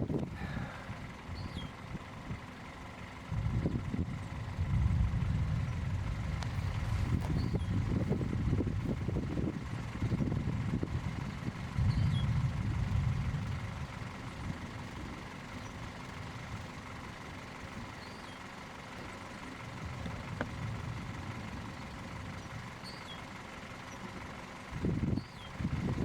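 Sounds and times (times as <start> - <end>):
vehicle engine idling: 0.0 - 26.0
wind on microphone: 3.3 - 15.3, 24.8 - 26.0.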